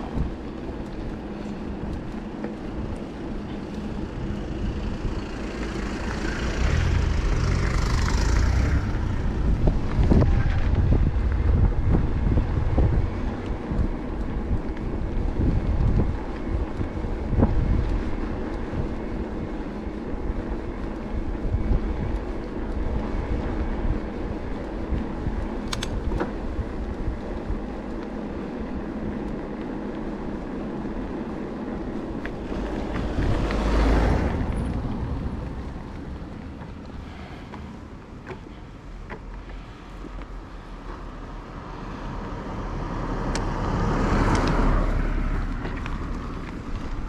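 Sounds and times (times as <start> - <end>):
rolling road noise: 0.0 - 47.0
wind buffeting microphone: 0.0 - 47.0.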